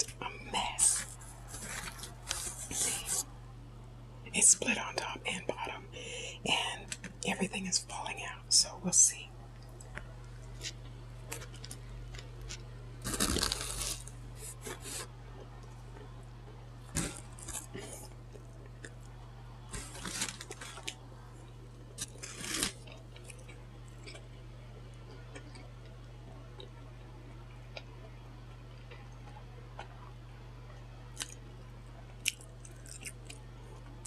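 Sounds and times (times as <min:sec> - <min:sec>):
low hum: 0:00.0 - 0:34.0
crunchy sandwich bites: 0:00.6 - 0:03.2, 0:09.6 - 0:24.4, 0:31.0 - 0:31.5, 0:32.1 - 0:34.0
chewing: 0:00.8 - 0:03.2, 0:09.6 - 0:24.3, 0:25.0 - 0:25.7, 0:32.2 - 0:33.9.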